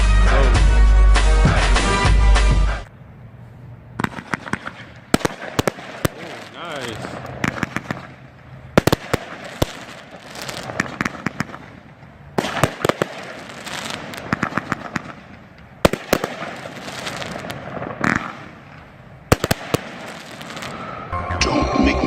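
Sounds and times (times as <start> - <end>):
firework bangs and crackling: 4.0 - 21.1.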